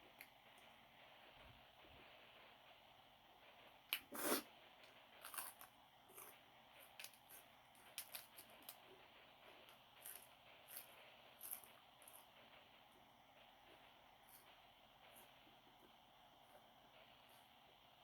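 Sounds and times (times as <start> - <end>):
chewing crunchy food: 4.0 - 8.9.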